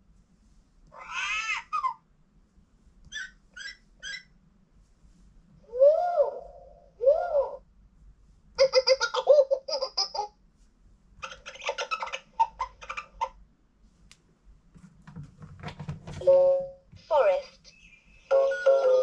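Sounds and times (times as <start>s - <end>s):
recorded animal call from toy speaker: 0.9s - 2.0s, 3.1s - 4.3s, 16.2s - 19.0s.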